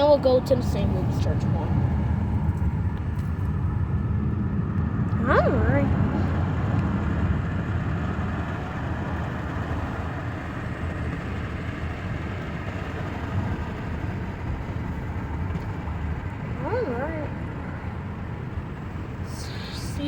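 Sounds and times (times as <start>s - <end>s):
car engine and road noise: 0.0s - 20.0s.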